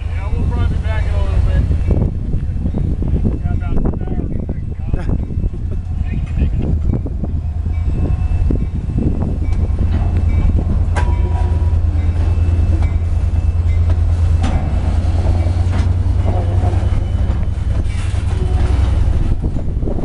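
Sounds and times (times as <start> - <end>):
freight train rumbling: 0.0 - 20.0
train clanks: 0.0 - 20.0
wheel squeals: 5.1 - 20.0.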